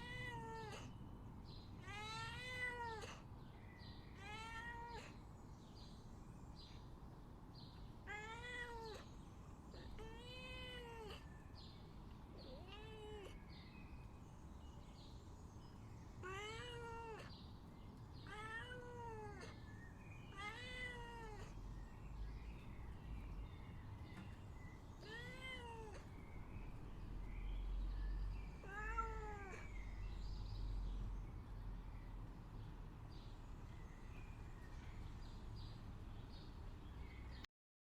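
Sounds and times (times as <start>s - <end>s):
cat meowing: 0.0s - 0.9s, 1.8s - 3.3s, 4.2s - 5.2s, 8.0s - 9.1s, 9.8s - 11.3s, 12.4s - 13.4s, 16.2s - 17.3s, 18.2s - 19.6s, 20.3s - 21.6s, 25.0s - 26.2s, 28.4s - 30.0s.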